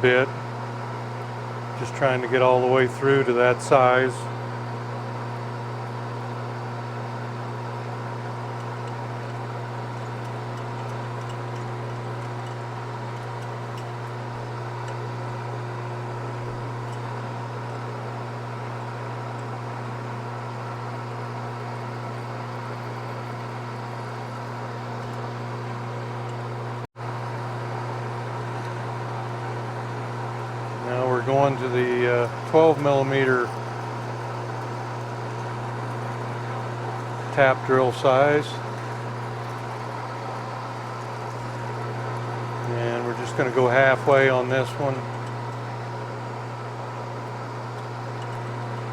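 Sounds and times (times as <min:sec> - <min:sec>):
machine tool humming: 0:00.0 - 0:48.9.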